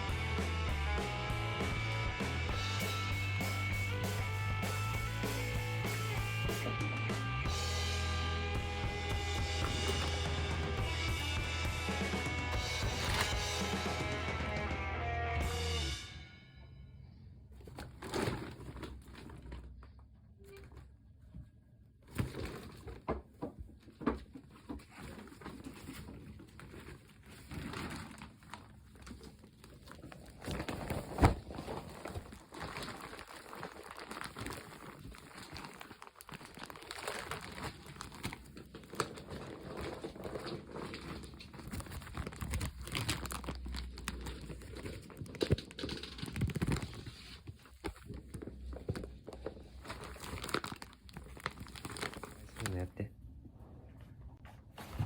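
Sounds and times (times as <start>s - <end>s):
plastic bag rustling: 2.9s - 14.8s, 17.6s - 19.8s, 23.8s - 52.9s.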